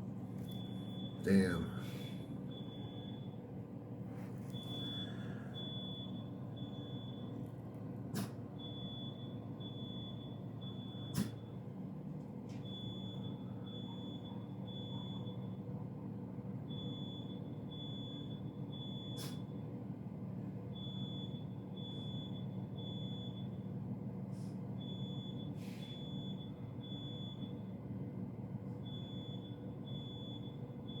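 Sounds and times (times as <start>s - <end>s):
steady low hum: 0.0s - 14.6s
fire alarm high beeps: 0.4s - 1.8s, 2.5s - 3.4s, 4.5s - 7.4s, 8.6s - 11.6s, 12.6s - 15.7s, 16.6s - 19.6s, 20.7s - 23.7s, 24.8s - 27.8s, 28.7s - 31.0s.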